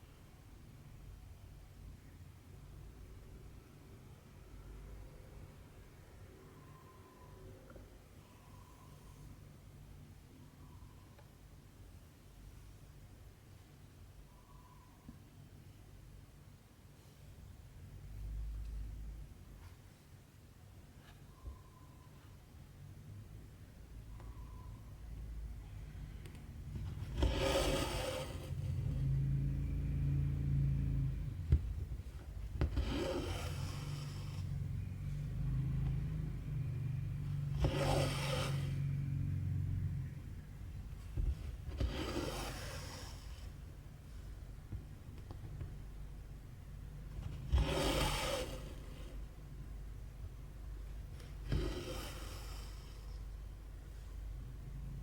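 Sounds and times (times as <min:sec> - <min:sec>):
steady low hum: 0:22.6 - 0:55.0
thread rasping through fabric: 0:26.6 - 0:28.6, 0:31.4 - 0:34.6, 0:37.4 - 0:38.9, 0:41.2 - 0:43.6, 0:47.1 - 0:49.2.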